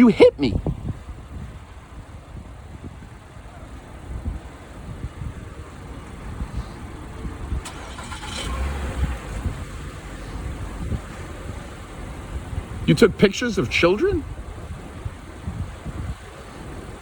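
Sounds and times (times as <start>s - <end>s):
car engine rumble: 0.0s - 17.0s
vehicle passing by: 7.7s - 12.7s.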